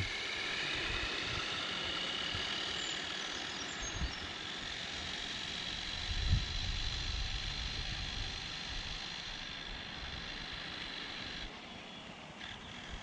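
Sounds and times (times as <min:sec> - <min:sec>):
wind noise on microphone: 0:00.0 - 0:01.6, 0:05.8 - 0:09.4
low wind gusts: 0:05.7 - 0:11.5.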